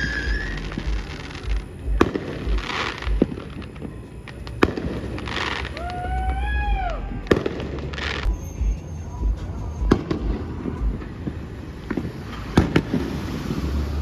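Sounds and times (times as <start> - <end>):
crackling hiss of shells: 0.0 - 8.3
firework bangs: 0.0 - 14.0.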